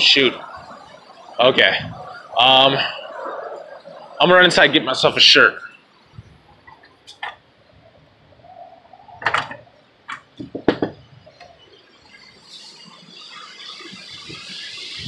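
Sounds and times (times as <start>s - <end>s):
door knocks and bangs: 10.4s - 11.0s
hiss: 12.0s - 15.0s.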